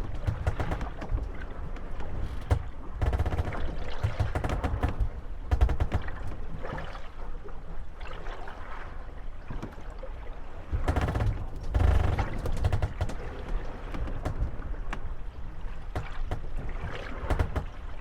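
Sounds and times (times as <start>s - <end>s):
wooden boat hulls knocking: 0.0s - 6.8s, 10.7s - 15.1s, 15.8s - 18.0s
water sloshing: 0.0s - 18.0s.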